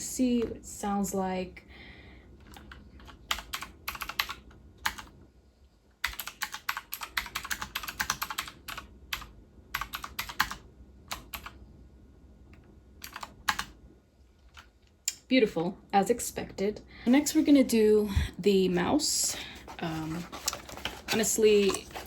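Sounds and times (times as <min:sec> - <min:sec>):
clicky mechanical keyboard typing: 0:02.5 - 0:05.1, 0:06.0 - 0:11.6, 0:13.0 - 0:13.7.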